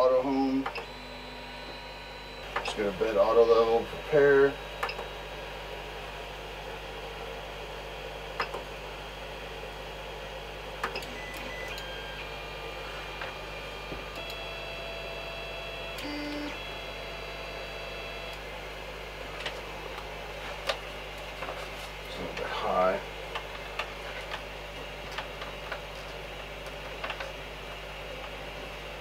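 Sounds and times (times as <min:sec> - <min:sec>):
stepper motors whining: 0:00.0 - 0:05.2, 0:10.8 - 0:18.5.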